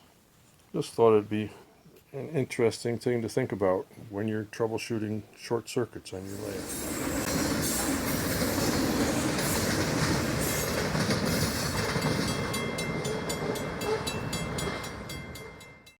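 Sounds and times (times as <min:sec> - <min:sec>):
train running on track: 0:06.3 - 0:16.0
wheels clicking over rail joints: 0:06.6 - 0:16.0.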